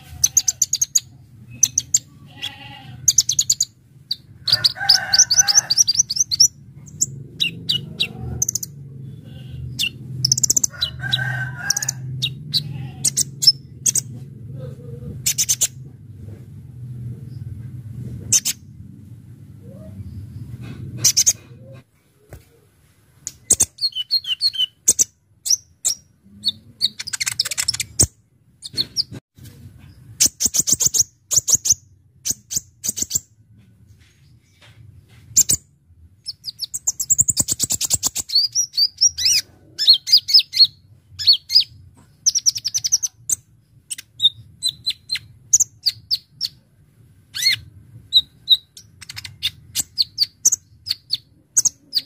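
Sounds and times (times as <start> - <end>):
faint low hum: 0.0 - 23.6.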